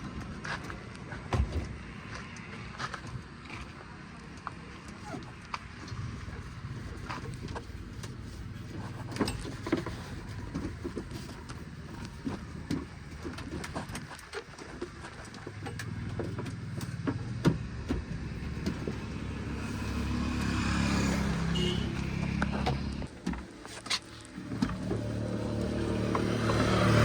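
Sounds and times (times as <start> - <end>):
heavy machinery engine running: 24.2 - 27.0.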